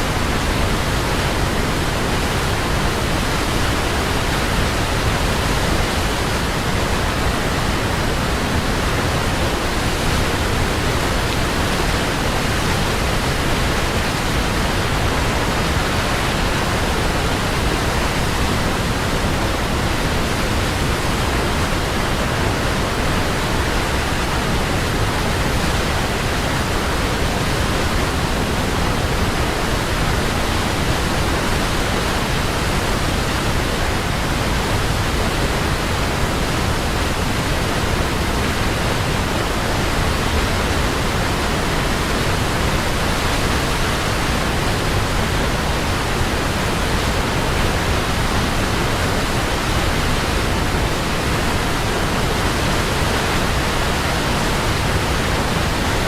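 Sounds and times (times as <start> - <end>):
waterfall rushing: 0.0 - 56.0.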